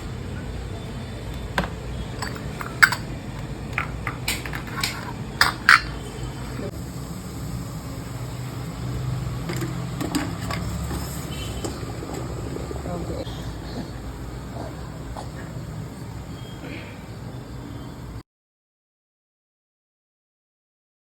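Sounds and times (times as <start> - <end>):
kitchenware clinking: 1.2 - 6.6, 9.5 - 12.8.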